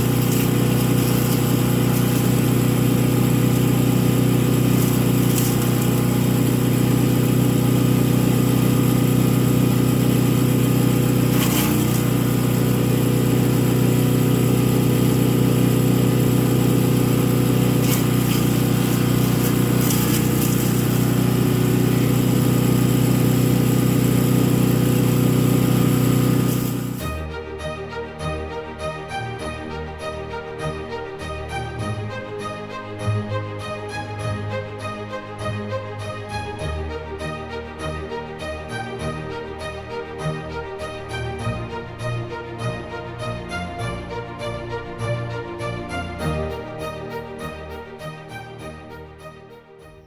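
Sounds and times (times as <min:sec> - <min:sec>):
wood chipper engine running: 0:00.0 - 0:27.4.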